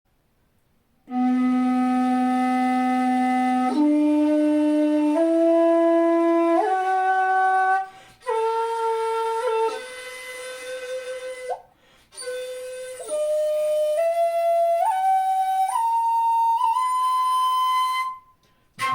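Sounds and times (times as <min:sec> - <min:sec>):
bamboo flute playing held notes: 0:01.1 - 0:18.9.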